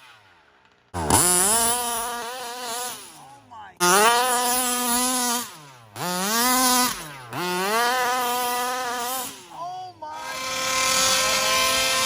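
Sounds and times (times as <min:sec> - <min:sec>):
two-stroke engine revving: 0:01.0 - 0:12.0.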